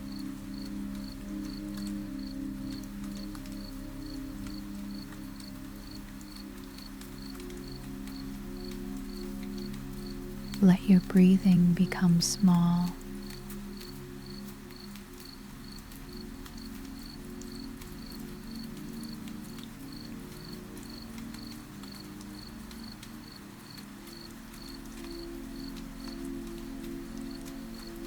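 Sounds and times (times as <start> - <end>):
ambient music drone: 0.0 - 11.1
rain patter: 0.0 - 28.0.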